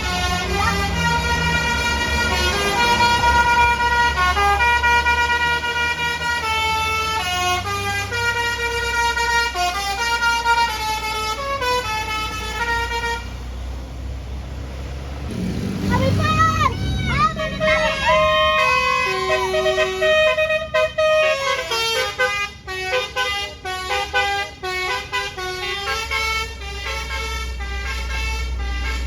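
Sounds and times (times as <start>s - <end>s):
musical horn melody: 0.0s - 13.3s, 16.3s - 29.0s
bus engine running: 0.0s - 29.0s.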